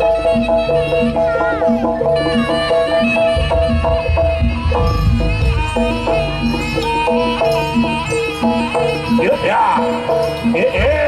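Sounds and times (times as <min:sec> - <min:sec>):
drums: 0:00.0 - 0:11.0
sliding wavering melodic line: 0:00.0 - 0:11.0
tuned metal percussion melody: 0:00.0 - 0:11.0.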